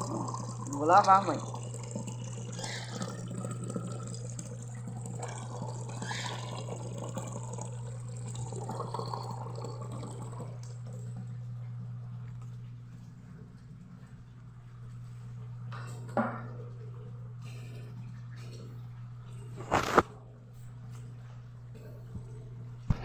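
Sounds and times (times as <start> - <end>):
water running and splashing: 0.0 - 11.0
washing machine hum: 0.0 - 23.0.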